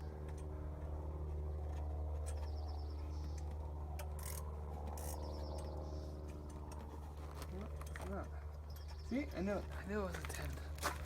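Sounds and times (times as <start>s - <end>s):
steady low hum: 0.0s - 11.0s
sharp metal clicks: 3.3s - 7.1s.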